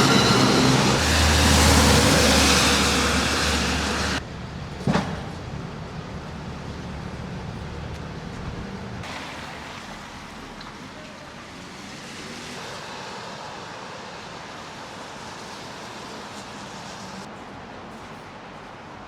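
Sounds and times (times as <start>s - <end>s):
vehicle engine rumble: 0.0s - 12.0s
hiss of passing traffic: 0.0s - 19.0s.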